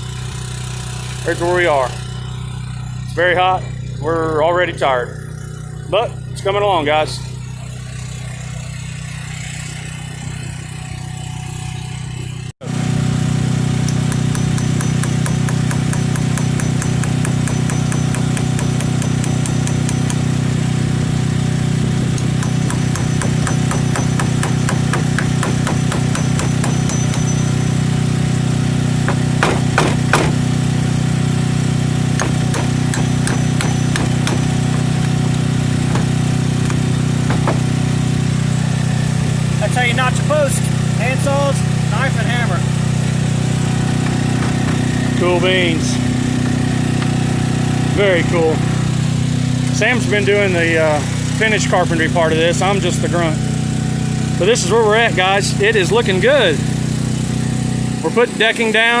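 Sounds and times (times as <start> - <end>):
engine idling hum: 0.0 - 59.0
hammer blows on wood: 13.8 - 20.3, 22.1 - 27.8, 29.0 - 30.5, 32.1 - 35.2.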